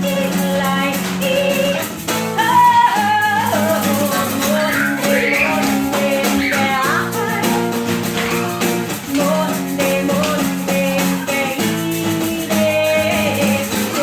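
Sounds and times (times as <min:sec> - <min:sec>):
acoustic guitar strumming chords: 0:00.0 - 0:14.0.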